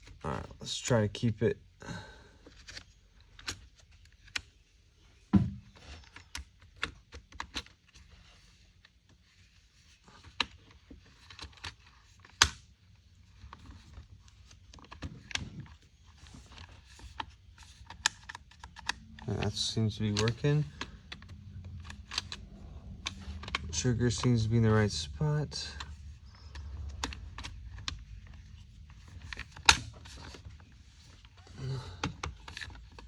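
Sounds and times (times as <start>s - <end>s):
plastic parts clicking: 13.4s - 24.5s, 25.7s - 33.0s.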